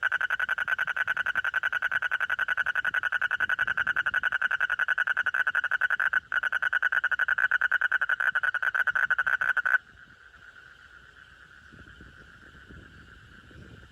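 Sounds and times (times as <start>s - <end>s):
frog calling loudly: 0.0s - 9.8s
faint steady frog call: 0.0s - 13.9s.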